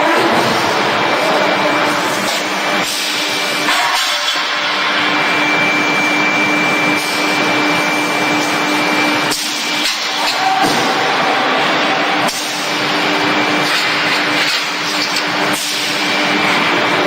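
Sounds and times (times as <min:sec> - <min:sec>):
faint machine hum and whine: 0:00.0 - 0:17.0
factory machinery hiss: 0:11.8 - 0:16.7.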